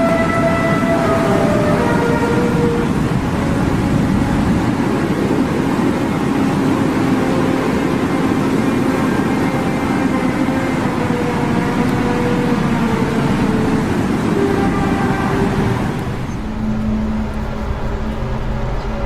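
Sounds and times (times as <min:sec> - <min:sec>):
droning held tones: 0:00.0 - 0:19.0
low steady hum: 0:00.0 - 0:19.0
rumbling noise: 0:15.5 - 0:19.0.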